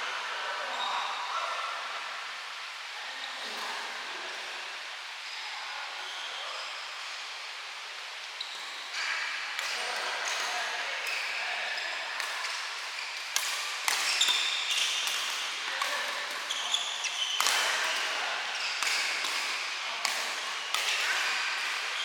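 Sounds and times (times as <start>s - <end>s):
rackets striking shuttlecock: 13.2s - 16.5s, 17.4s - 18.2s, 18.8s - 21.9s
shoes squeaking on court: 16.4s - 17.6s.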